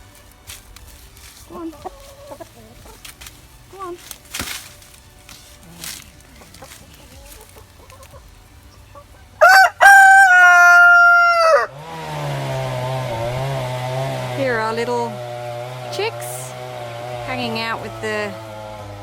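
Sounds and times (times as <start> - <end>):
chainsaw running: 0.0 - 8.8, 9.4 - 19.0
chickens clucking: 0.0 - 18.6
rooster crowing: 9.4 - 12.0.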